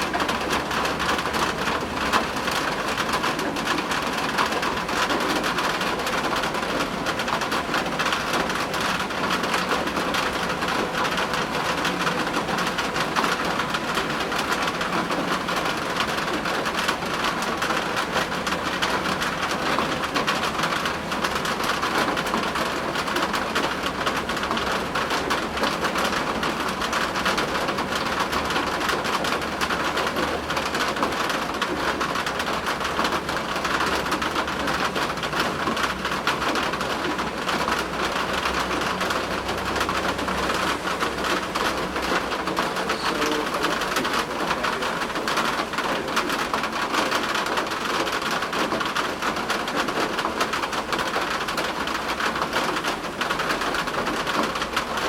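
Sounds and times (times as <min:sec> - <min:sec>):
heavy rain pattering: 0:00.0 - 0:55.0.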